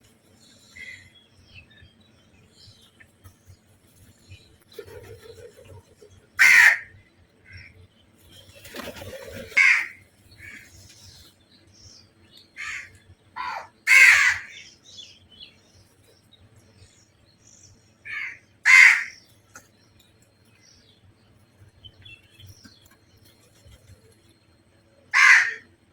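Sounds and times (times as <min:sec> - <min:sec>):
crows cawing: 0:06.4 - 0:07.0, 0:09.6 - 0:10.6, 0:12.6 - 0:14.7, 0:18.1 - 0:19.2, 0:25.1 - 0:25.7.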